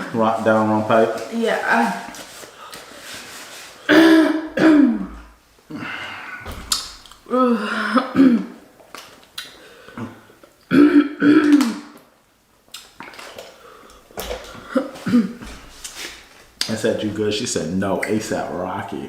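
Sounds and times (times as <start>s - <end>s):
woman coughing: 3.9s - 5.2s, 7.4s - 8.6s, 10.7s - 11.8s, 14.7s - 15.5s.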